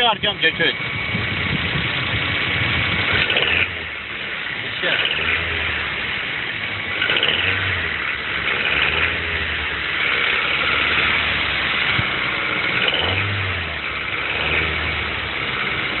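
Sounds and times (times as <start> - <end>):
car engine knocking rattle: 0.0 - 16.0.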